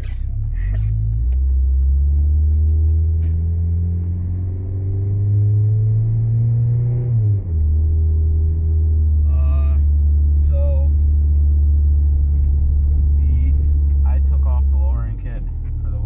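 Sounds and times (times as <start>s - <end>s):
exhaust drone under acceleration: 0.0s - 16.0s
tire hum on road: 0.0s - 16.0s.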